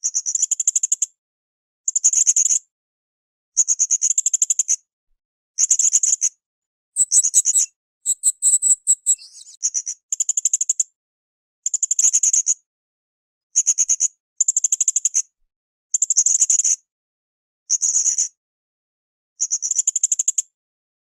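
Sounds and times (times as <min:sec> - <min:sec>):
parrot shrill chattering calls: 0:07.0 - 0:09.6.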